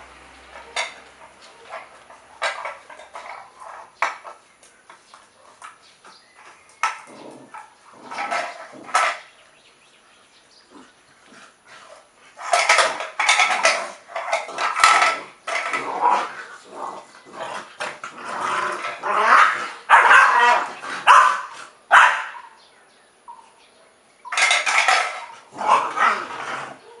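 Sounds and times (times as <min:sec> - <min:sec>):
puppies barking: 0:00.5 - 0:04.0, 0:18.9 - 0:22.6
puppies growling: 0:06.4 - 0:09.2, 0:10.6 - 0:21.0, 0:24.4 - 0:27.0.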